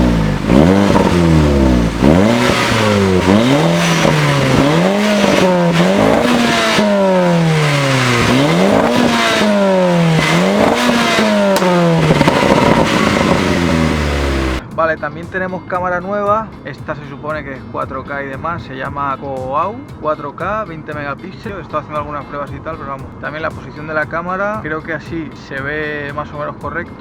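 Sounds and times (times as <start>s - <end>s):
car engine revving: 0.0s - 14.6s.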